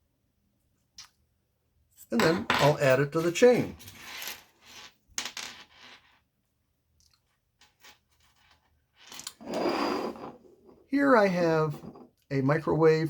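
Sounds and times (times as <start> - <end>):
metal chain clinks and scrapes: 2.6 - 6.1, 7.6 - 10.8.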